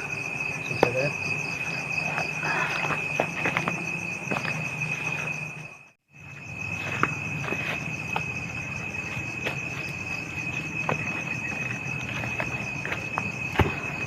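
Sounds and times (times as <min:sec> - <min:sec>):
insect trilling: 0:00.0 - 0:14.0
pulsing insect chirr: 0:00.0 - 0:14.0.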